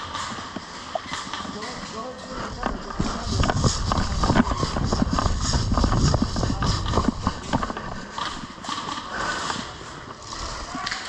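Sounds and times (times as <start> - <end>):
running footsteps: 0.6 - 9.6
gear rattling: 1.2 - 9.6
low rumble: 2.8 - 8.0.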